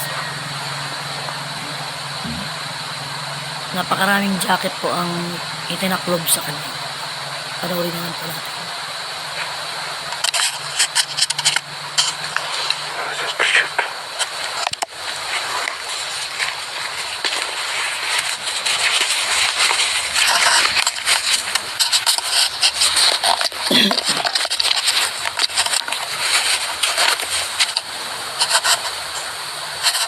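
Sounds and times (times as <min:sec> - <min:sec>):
faint unclear voice: 0:00.0 - 0:02.6, 0:03.8 - 0:08.7
hiss with crackles: 0:10.3 - 0:30.0.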